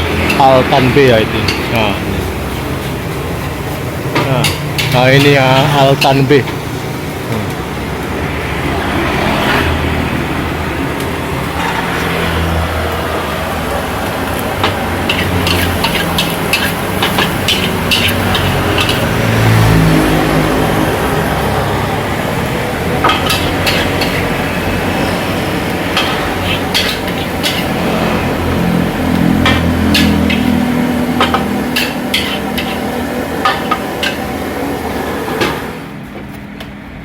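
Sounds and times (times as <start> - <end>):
noodles sizzling in a wok: 12.2 - 35.8
metal spatula scraping a wok: 15.0 - 19.2, 23.1 - 28.6, 29.5 - 30.6, 31.2 - 34.3.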